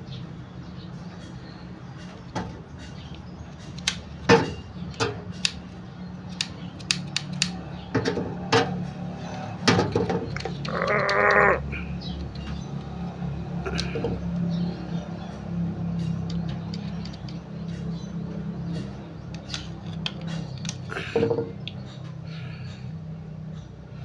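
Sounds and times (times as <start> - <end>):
hand tool clicks and knocks: 2.0 - 11.6, 15.3 - 22.0
wavering bleat-like call: 10.7 - 11.9.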